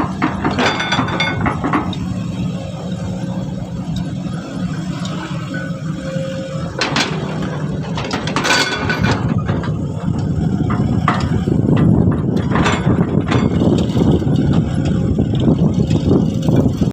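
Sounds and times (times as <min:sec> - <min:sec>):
metallic clanks and knocks: 0:00.0 - 0:02.1, 0:06.7 - 0:16.1
diesel engine droning: 0:00.0 - 0:16.9.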